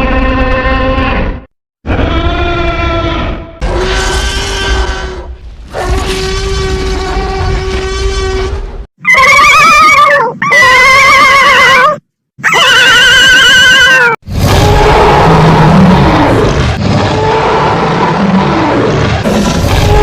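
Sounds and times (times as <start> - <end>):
deep rough roar: 14.2 - 20.0.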